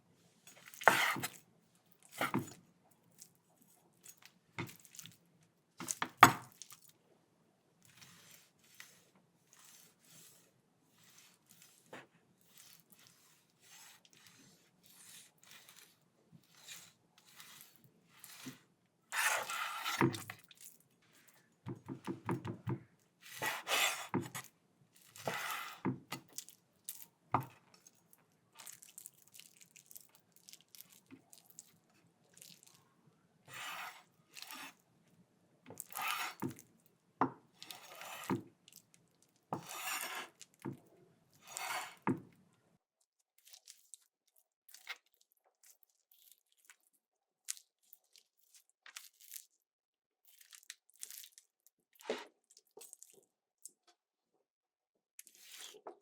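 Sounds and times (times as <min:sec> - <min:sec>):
knife cutting raw meat: 0:00.7 - 0:01.4, 0:02.1 - 0:02.6, 0:11.0 - 0:20.3, 0:21.7 - 0:24.5, 0:25.1 - 0:26.3, 0:33.5 - 0:34.8, 0:35.8 - 0:36.6, 0:37.6 - 0:38.4, 0:39.6 - 0:40.6, 0:41.4 - 0:42.2.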